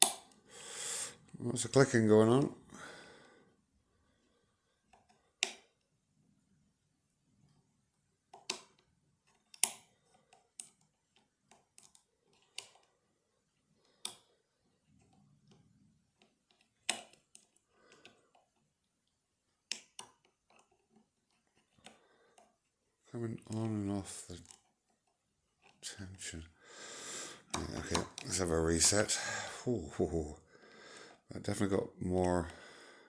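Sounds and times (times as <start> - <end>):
lock picking clicks: 9.5 - 9.9.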